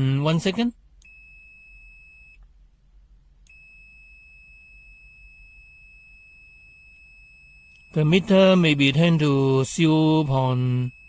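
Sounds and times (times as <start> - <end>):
multimeter continuity beep: 0.1 - 2.4, 3.4 - 11.0.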